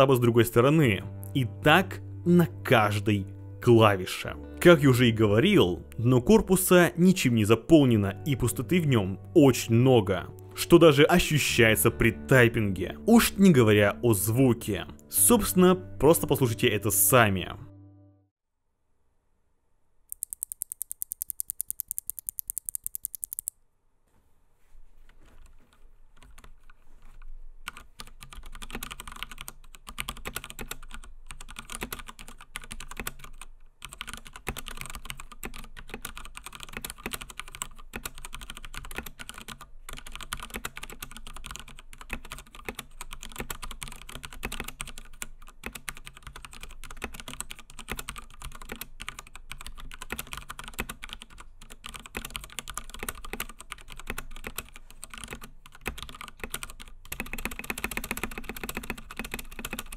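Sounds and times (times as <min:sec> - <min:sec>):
muted mechanical keyboard typing: 0:20.1 - 0:23.5, 0:26.2 - 0:59.9.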